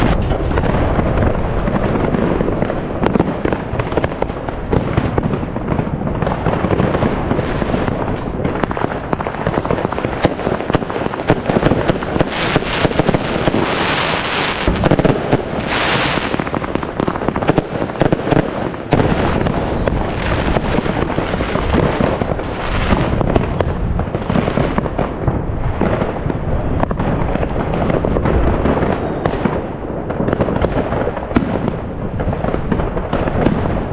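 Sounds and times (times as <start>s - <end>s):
hissing firework crackle: 0.0s - 33.9s
firework shells bursting: 7.8s - 19.4s.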